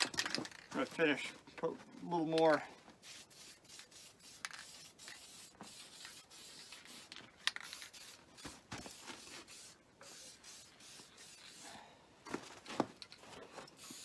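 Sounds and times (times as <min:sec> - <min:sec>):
clicks and scraping of hand work: 0:00.0 - 0:01.0.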